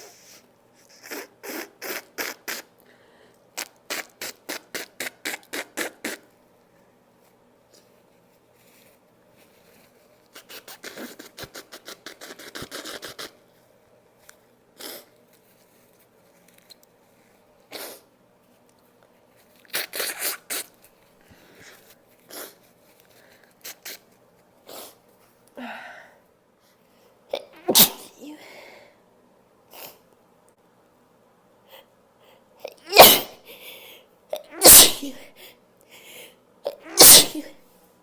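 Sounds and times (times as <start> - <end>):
person sniffing and breathing: 0.0 - 6.3, 10.3 - 13.4, 14.8 - 15.2, 17.7 - 18.1, 19.7 - 25.0, 31.7 - 37.6.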